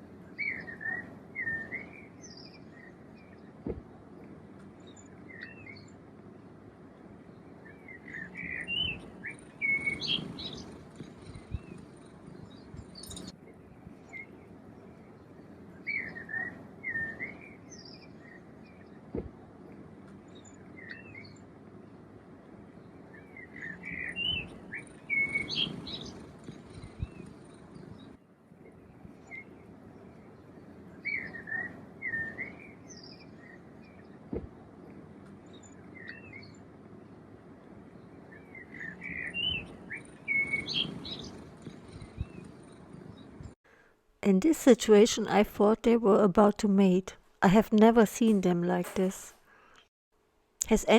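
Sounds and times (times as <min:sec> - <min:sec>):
outdoor background hiss: 0:00.0 - 0:50.9
bird chirping: 0:07.3 - 0:13.3, 0:22.8 - 0:28.1, 0:37.9 - 0:43.5.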